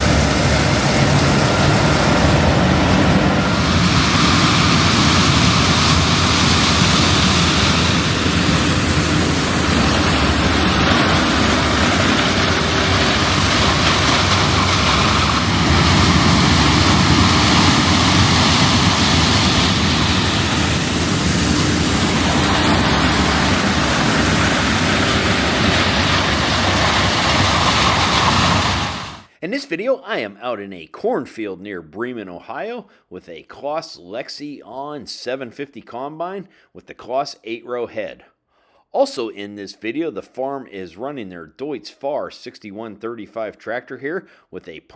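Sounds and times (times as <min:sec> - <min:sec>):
combine harvester engine roaring: 0:00.0 - 0:29.3.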